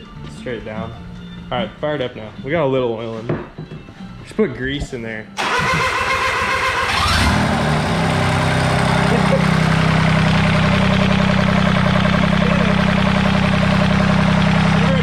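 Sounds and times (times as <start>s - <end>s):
diesel engine starting and idling: 5.4s - 15.0s.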